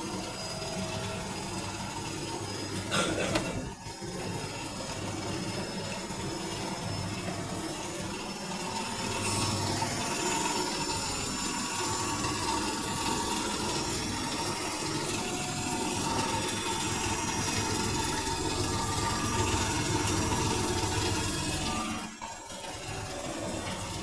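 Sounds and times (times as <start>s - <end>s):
washing machine running: 0.0s - 24.0s.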